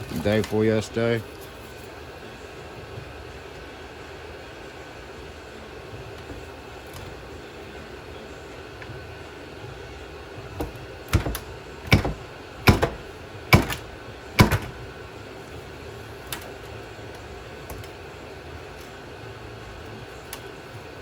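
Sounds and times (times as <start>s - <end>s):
hammer knocking on metal: 10.6s - 14.8s.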